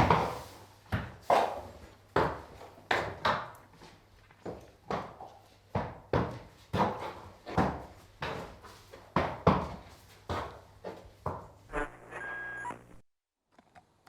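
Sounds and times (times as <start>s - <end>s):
horse hooves trotting: 1.6s - 11.5s.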